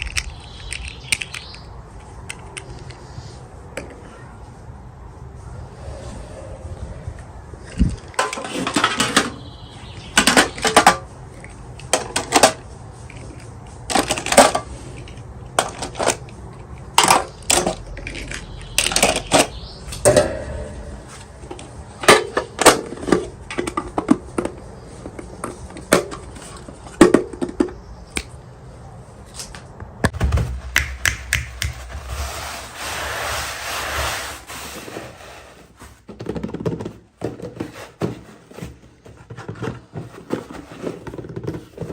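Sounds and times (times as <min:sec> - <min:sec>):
plastic toy pieces clattering: 0:10.2 - 0:16.3.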